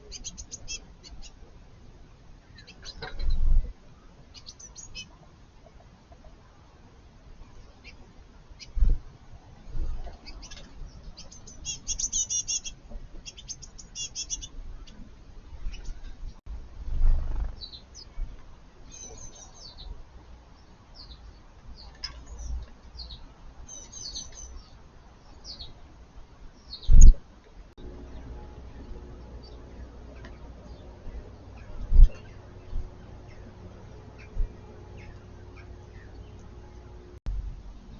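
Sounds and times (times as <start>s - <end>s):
small birds chirping: 0.0s - 1.5s, 2.4s - 6.2s, 7.4s - 8.9s, 9.8s - 16.2s, 17.3s - 25.9s, 26.5s - 27.2s, 27.9s - 37.2s
low rumble: 15.5s - 18.4s, 27.8s - 37.9s.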